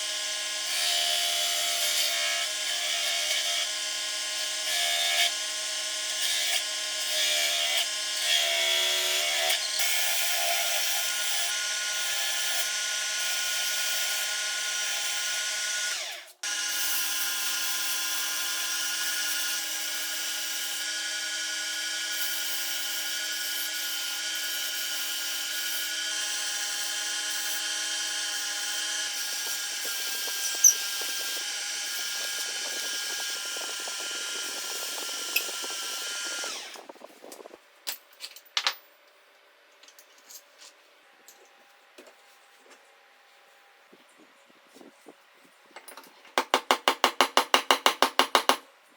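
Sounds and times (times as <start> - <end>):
electric power tool whine: 0.0 - 37.5.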